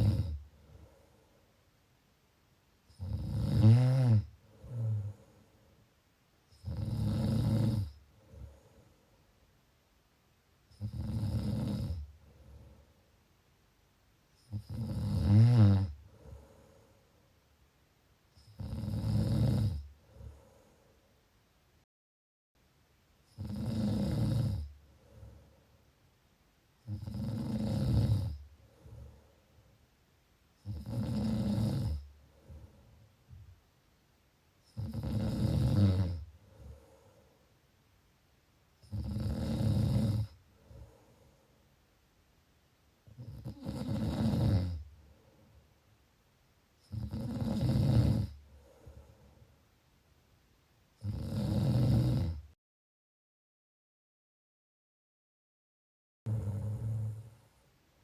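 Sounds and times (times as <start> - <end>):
person snoring: 0.0 - 1.0, 2.9 - 5.4, 6.5 - 8.8, 10.7 - 12.8, 14.4 - 16.8, 18.4 - 20.6, 23.3 - 25.5, 26.8 - 29.2, 30.6 - 32.8, 34.7 - 37.2, 38.8 - 41.0, 43.2 - 44.9, 46.8 - 49.1, 51.0 - 52.5, 56.3 - 57.4
faint breaths: 0.0 - 1.9, 4.3 - 6.6, 7.8 - 9.5, 12.0 - 13.3, 15.9 - 17.4, 19.8 - 21.4, 24.6 - 26.1, 28.3 - 30.1, 31.5 - 33.6, 36.2 - 37.7, 39.9 - 41.9, 44.2 - 45.9, 48.3 - 49.8.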